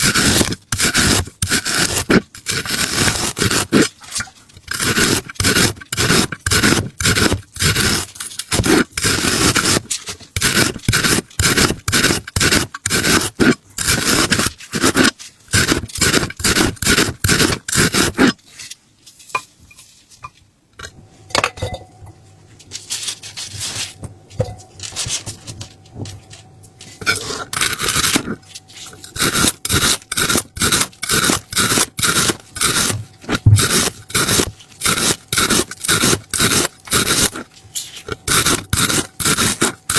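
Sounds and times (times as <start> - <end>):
rapid scraping strokes: 0.0 - 18.7, 26.9 - 39.9.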